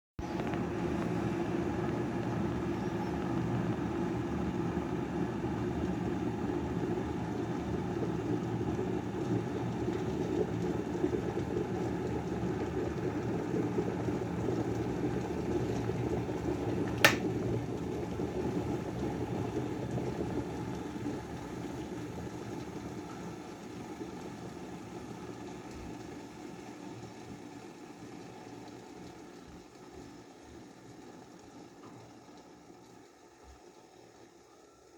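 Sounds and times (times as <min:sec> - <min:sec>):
kettle heating water: 0:00.2 - 0:34.9
kettle switch click: 0:16.9 - 0:17.3.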